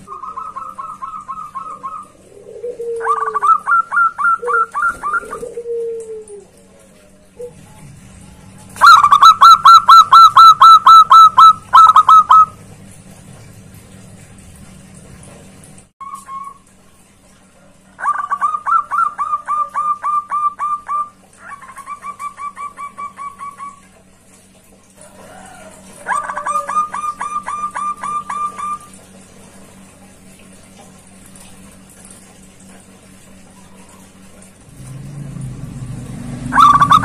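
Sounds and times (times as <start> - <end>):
dove cooing: 0.0 - 7.9, 8.7 - 12.6, 17.9 - 24.0, 25.1 - 29.0, 36.4 - 37.0.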